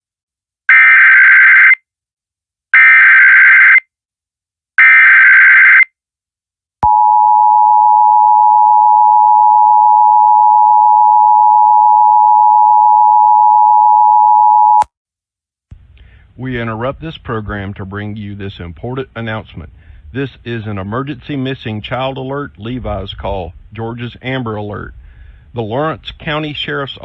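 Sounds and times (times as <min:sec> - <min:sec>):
two-tone attention beep: 0:06.8 - 0:14.9.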